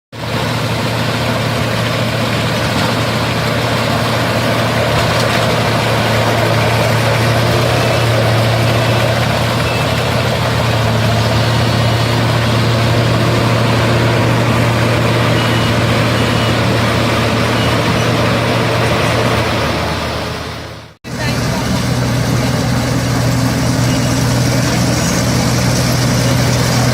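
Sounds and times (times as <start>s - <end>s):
combine harvester engine droning: 0.1s - 26.9s
machinery noise: 0.1s - 26.9s.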